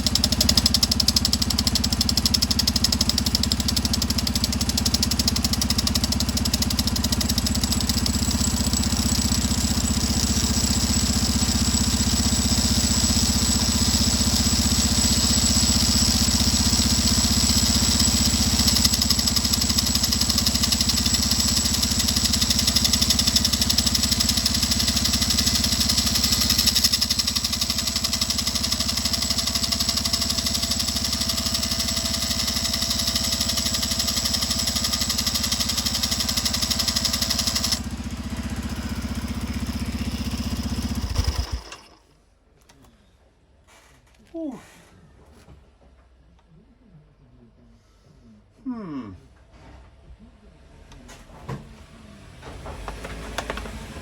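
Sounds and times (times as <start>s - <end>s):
tool grinding metal: 0.0s - 41.9s
motorcycle engine running: 0.0s - 42.0s.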